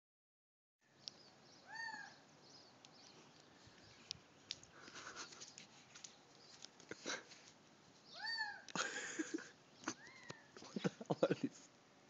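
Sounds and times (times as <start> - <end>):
bird chatter: 1.0 - 8.3.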